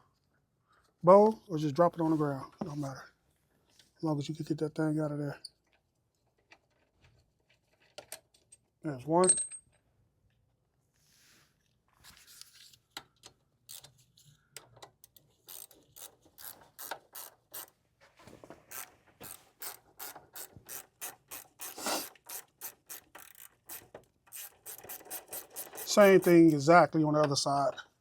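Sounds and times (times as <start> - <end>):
ratcheting wrench clicking: 13.6 - 17.7, 18.7 - 26.6.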